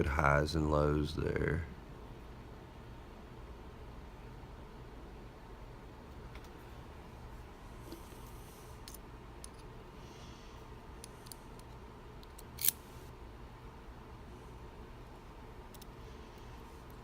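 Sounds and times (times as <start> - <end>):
sharp metallic click: 11.0 - 12.9
small metal parts clicking: 11.0 - 12.9.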